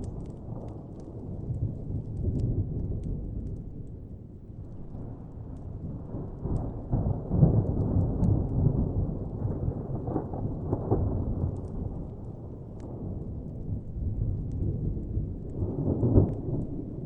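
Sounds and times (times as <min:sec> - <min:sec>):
distant thunder rumbling: 0:00.0 - 0:17.0
wood fire crackling: 0:00.0 - 0:17.0.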